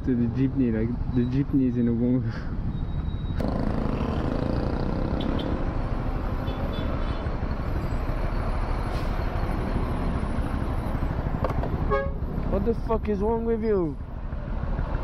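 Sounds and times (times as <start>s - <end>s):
motorcycle engine: 3.4s - 6.6s.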